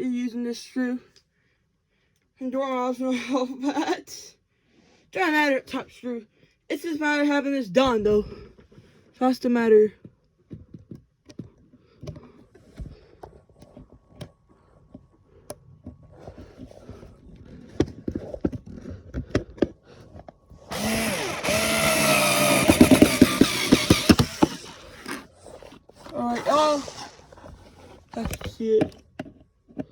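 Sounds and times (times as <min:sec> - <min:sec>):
handling clicks and knocks: 0:10.0 - 0:20.7, 0:27.4 - 0:29.9
electric screwdriver motor whine: 0:20.6 - 0:27.3.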